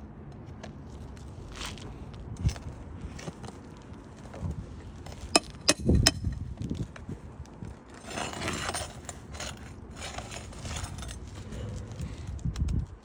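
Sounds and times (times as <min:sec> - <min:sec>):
crowbar scraping shingles: 0:04.4 - 0:06.4, 0:07.8 - 0:12.4
crowbar clinking on metal: 0:05.1 - 0:06.4, 0:08.0 - 0:12.2.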